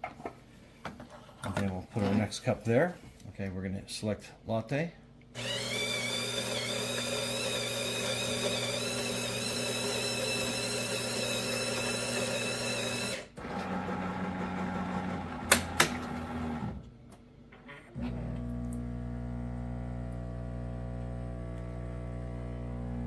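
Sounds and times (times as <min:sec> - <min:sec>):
coffee grinder motor whining: 0:05.4 - 0:16.8, 0:18.0 - 0:23.0
low steady hum: 0:16.0 - 0:23.0.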